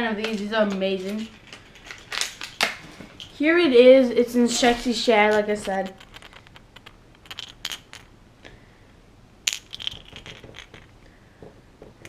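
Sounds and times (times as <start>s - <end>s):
lure rattle ball clicking: 4.9s - 8.1s, 9.4s - 11.0s.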